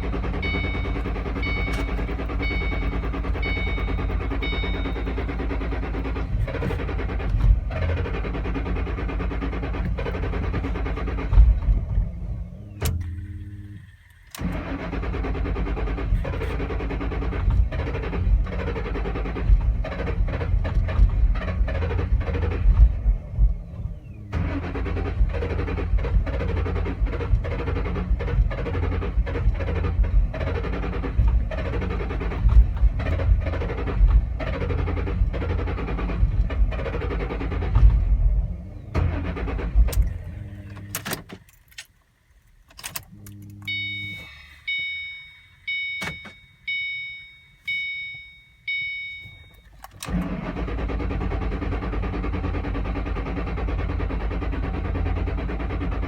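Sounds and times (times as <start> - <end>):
car warning chime: 0.0 - 5.8, 43.0 - 50.2
car engine running rough: 0.0 - 41.2, 49.5 - 56.0
car engine idling: 0.0 - 56.0.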